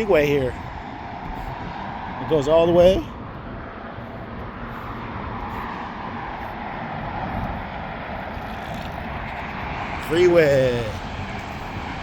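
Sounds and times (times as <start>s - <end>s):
freeway traffic hum: 0.0s - 12.0s.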